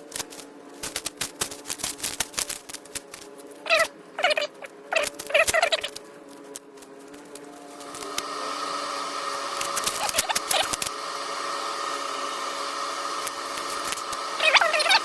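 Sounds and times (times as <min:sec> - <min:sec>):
clicks and rustles: 0:00.0 - 0:08.3
machine whirring: 0:00.0 - 0:15.0.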